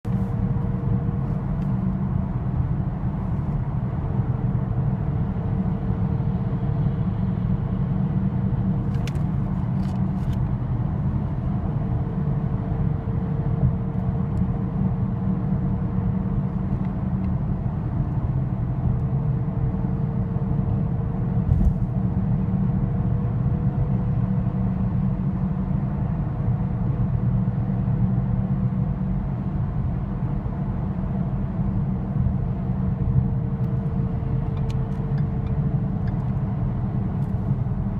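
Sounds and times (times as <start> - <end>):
car engine and road rumble: 0.0 - 37.9.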